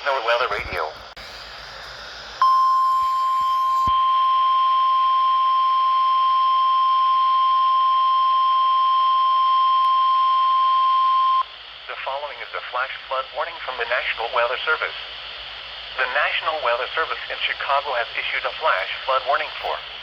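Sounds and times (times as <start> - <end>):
steady warning alarm tone: 1.2 - 11.5.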